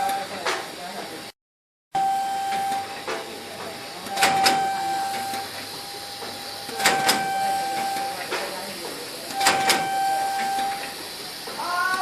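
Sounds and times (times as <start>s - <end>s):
packaging machine whine: 0.0s - 1.0s, 2.0s - 12.0s
sharp mechanical clacks: 2.5s - 12.0s.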